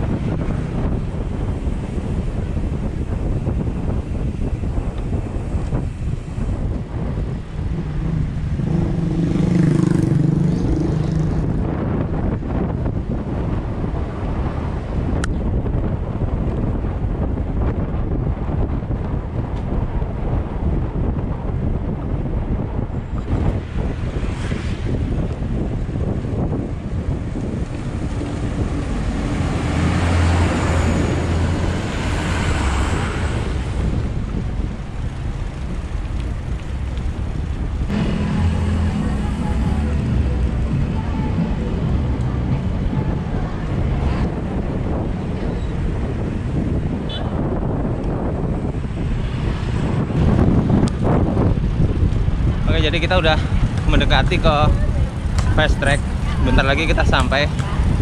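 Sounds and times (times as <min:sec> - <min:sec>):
motor vehicle engine hum: 0:00.0 - 0:58.0
wind buffeting microphone: 0:00.0 - 0:58.0
engine drone: 0:37.7 - 0:44.2.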